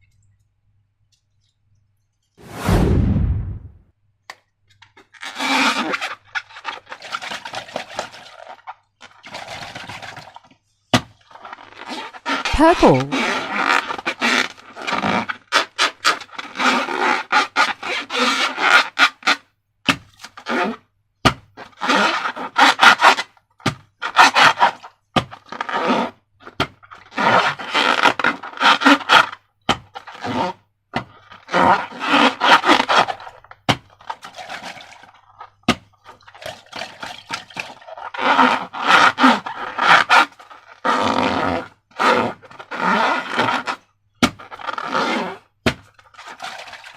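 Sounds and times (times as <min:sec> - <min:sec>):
slime and balloons squeezed: 0:11.3 - 0:16.9.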